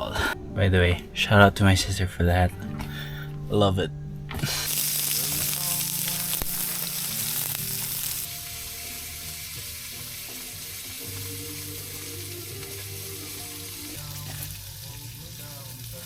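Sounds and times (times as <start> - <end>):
food sizzling in a pan: 4.6 - 16.0.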